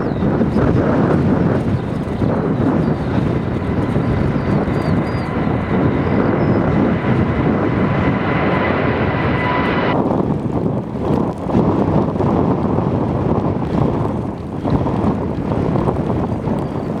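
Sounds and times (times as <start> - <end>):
high engine whine: 0.0 - 10.1
jet engines rumbling: 0.0 - 11.0.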